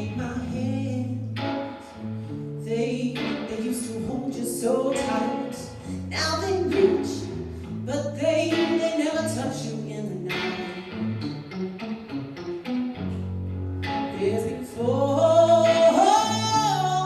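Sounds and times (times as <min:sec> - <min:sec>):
person singing: 0:00.0 - 0:11.4, 0:14.0 - 0:17.0
held bass notes: 0:00.0 - 0:17.0
instrumental accompaniment: 0:10.3 - 0:14.4.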